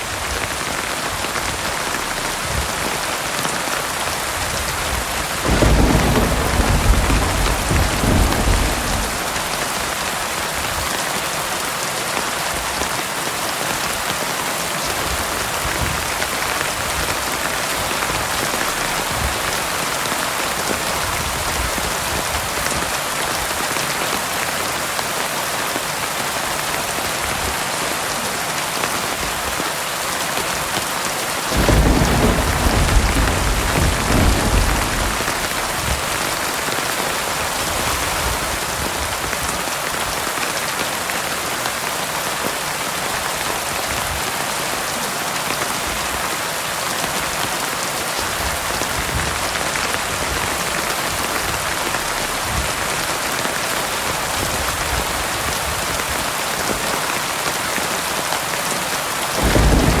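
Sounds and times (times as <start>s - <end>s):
heavy rain: 0.0s - 60.0s
thunder rumble: 4.3s - 10.9s, 31.5s - 39.2s, 59.4s - 60.0s.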